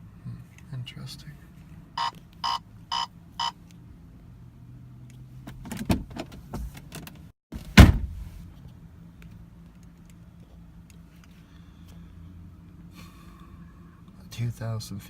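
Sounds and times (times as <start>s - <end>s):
dashboard electronic beep: 2.0s - 3.6s
clicks and knocks in car: 5.5s - 8.2s
loud thump: 7.6s - 8.3s.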